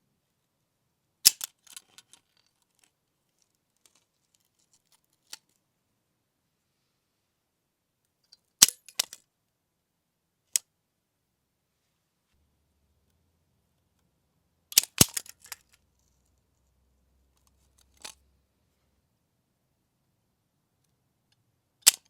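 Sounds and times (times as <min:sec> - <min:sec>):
rattle of small clicks: 0:01.3 - 0:05.5.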